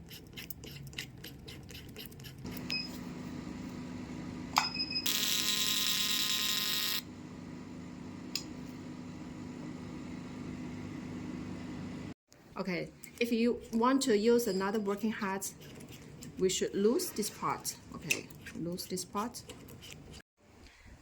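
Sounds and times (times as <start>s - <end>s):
harsh buzzer: 5.0s - 7.1s.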